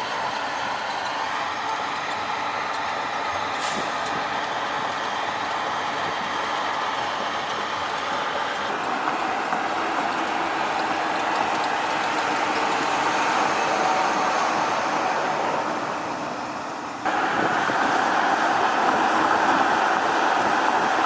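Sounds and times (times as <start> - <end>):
truck road and wind noise: 0.0 - 21.0.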